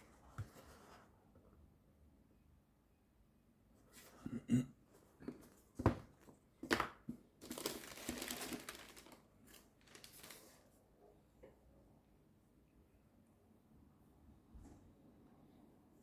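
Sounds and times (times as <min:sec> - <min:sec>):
paper packaging crumpling: 0:07.4 - 0:10.6.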